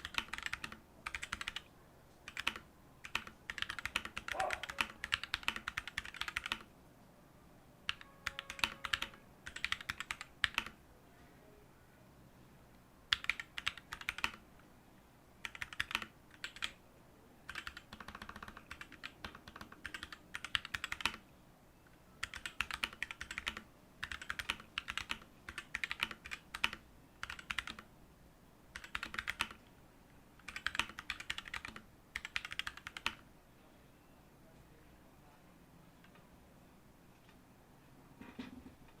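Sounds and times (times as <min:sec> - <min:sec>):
mechanical keyboard typing: 0:00.0 - 0:06.7, 0:07.9 - 0:10.8, 0:13.1 - 0:14.4, 0:15.4 - 0:16.8, 0:17.5 - 0:21.2, 0:22.2 - 0:27.9, 0:28.7 - 0:29.6, 0:30.4 - 0:33.2.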